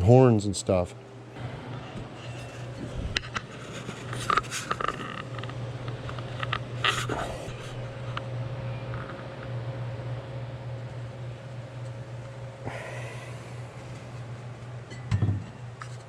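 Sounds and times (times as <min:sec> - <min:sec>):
steady low hum: 0:00.0 - 0:16.0
light clicks taps and scrapes: 0:03.1 - 0:07.1.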